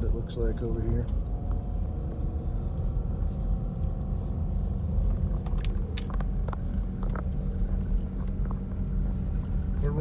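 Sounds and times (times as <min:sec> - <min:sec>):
car engine low rumble: 0:00.0 - 0:10.0.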